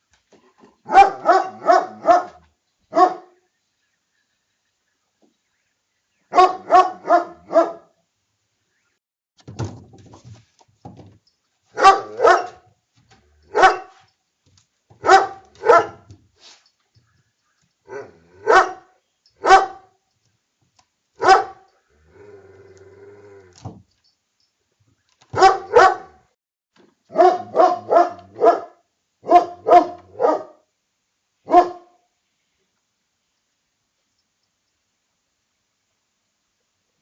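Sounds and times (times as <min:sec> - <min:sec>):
dog barking: 0:00.9 - 0:03.4, 0:06.3 - 0:08.0, 0:11.8 - 0:12.7, 0:13.5 - 0:14.0, 0:15.0 - 0:16.1, 0:17.9 - 0:20.0, 0:21.2 - 0:21.7, 0:25.3 - 0:26.2, 0:27.1 - 0:30.7, 0:31.4 - 0:32.0.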